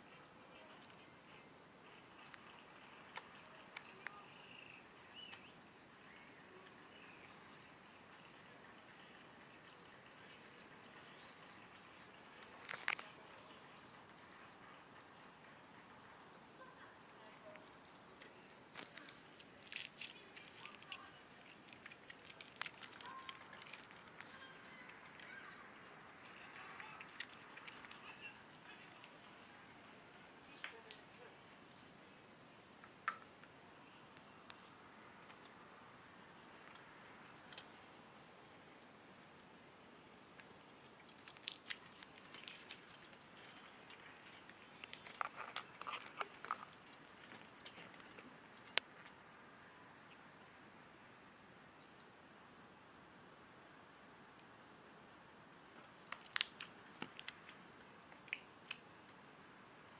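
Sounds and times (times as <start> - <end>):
slime sticky clicks and pops: 56.0 - 57.4.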